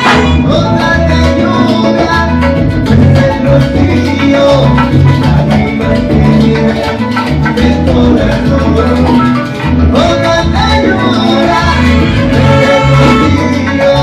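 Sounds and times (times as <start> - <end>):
salsa band playing: 0.0 - 14.0.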